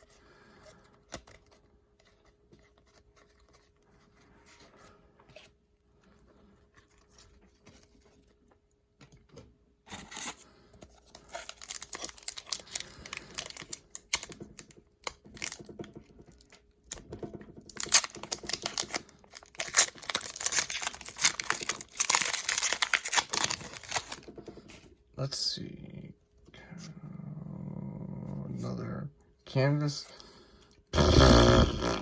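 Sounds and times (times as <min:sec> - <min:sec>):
cards being handled: 0:09.9 - 0:15.7, 0:17.7 - 0:24.8
plastic wrapper crinkling and tearing: 0:10.0 - 0:17.0, 0:17.6 - 0:24.3.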